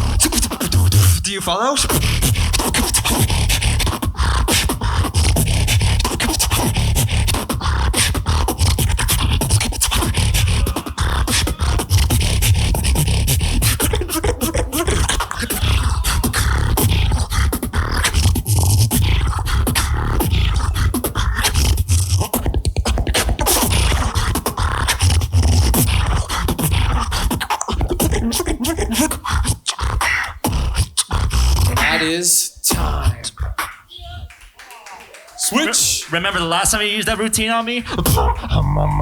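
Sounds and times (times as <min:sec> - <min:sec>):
beatboxing into a microphone: 0:00.0 - 0:39.0.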